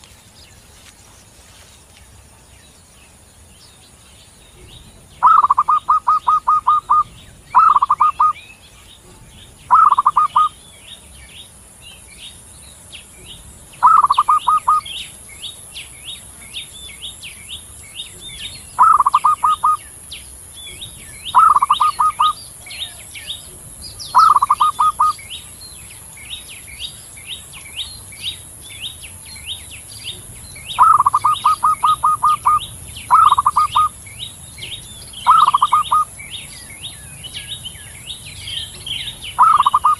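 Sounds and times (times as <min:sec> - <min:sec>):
faint high chirping: 0:00.0 - 0:39.9
dove cooing: 0:05.2 - 0:08.4, 0:09.0 - 0:10.6, 0:13.8 - 0:15.0, 0:18.8 - 0:19.8, 0:21.3 - 0:25.2, 0:30.1 - 0:33.9, 0:34.6 - 0:36.1, 0:38.6 - 0:39.9.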